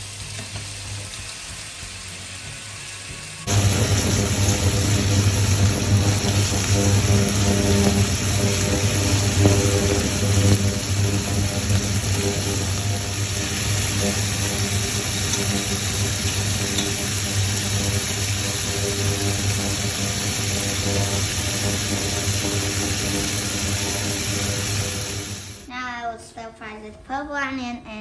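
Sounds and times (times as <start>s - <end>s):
meat sizzling in hot oil: 0.0s - 25.7s
low whirring hum: 3.5s - 25.7s.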